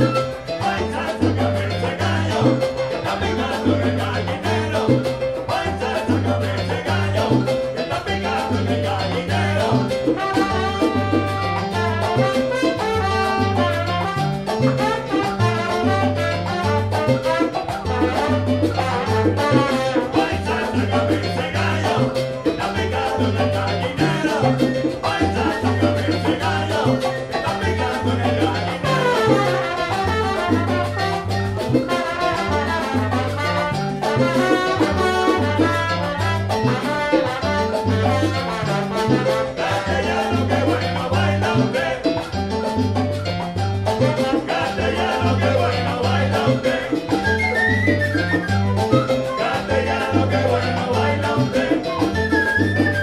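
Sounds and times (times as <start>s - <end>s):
salsa band playing: 0.0s - 53.0s
horn section: 10.2s - 20.5s, 28.8s - 40.2s.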